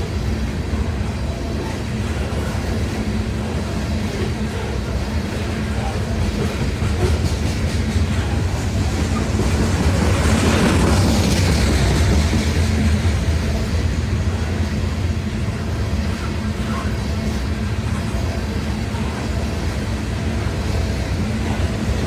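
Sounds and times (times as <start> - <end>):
low train drone: 0.0 - 22.0
train wheels on rails: 0.0 - 22.0.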